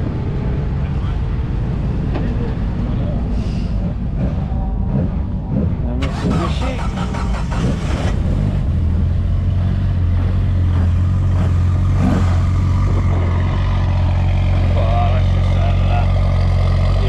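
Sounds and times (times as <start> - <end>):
car engine running steadily: 0.0 - 17.0.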